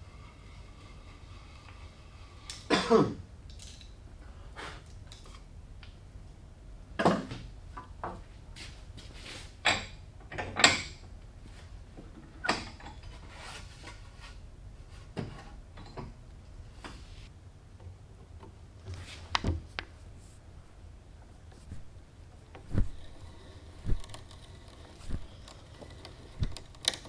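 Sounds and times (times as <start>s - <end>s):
wooden pieces scraping: 22.5s - 27.0s.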